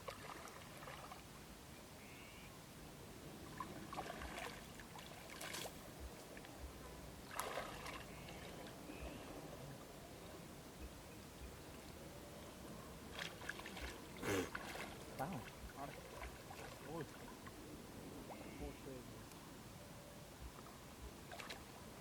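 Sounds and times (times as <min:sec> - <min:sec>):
shallow water splashing: 0:00.0 - 0:01.3, 0:03.4 - 0:06.6, 0:07.2 - 0:08.8, 0:13.0 - 0:17.6, 0:21.3 - 0:21.8.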